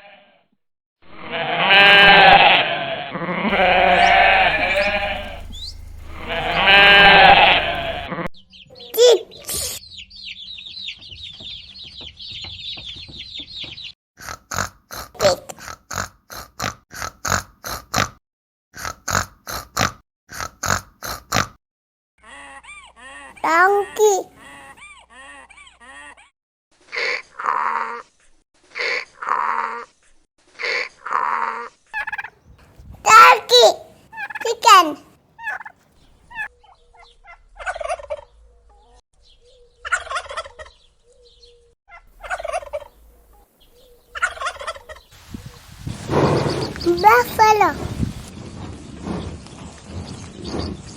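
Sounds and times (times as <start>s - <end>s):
turkey gobbling: 3.5s - 8.1s, 32.0s - 32.4s, 33.9s - 34.7s, 35.4s - 36.5s, 37.3s - 38.3s, 39.8s - 40.8s, 42.2s - 43.4s, 44.2s - 45.1s
pig grunting: 3.5s - 8.2s, 14.2s - 18.2s, 18.8s - 21.6s, 45.9s - 48.1s.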